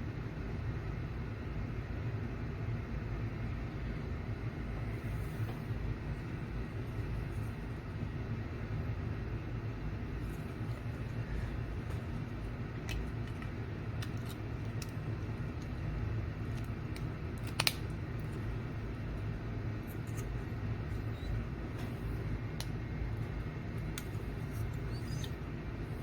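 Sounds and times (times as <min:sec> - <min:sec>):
low background hum: 0:00.0 - 0:26.0
chip clicking into socket: 0:16.5 - 0:18.4.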